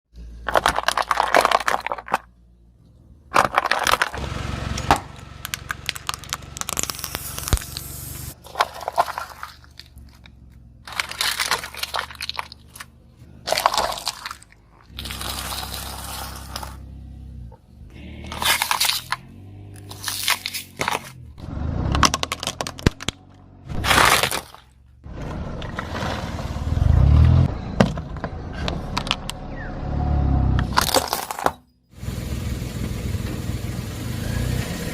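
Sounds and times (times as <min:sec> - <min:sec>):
tyre crushing brittle objects: 0:00.4 - 0:02.3, 0:03.3 - 0:04.2, 0:04.8 - 0:16.8, 0:18.0 - 0:21.2, 0:22.0 - 0:24.8, 0:30.7 - 0:31.6
car engine running low: 0:02.3 - 0:30.9, 0:31.8 - 0:34.9.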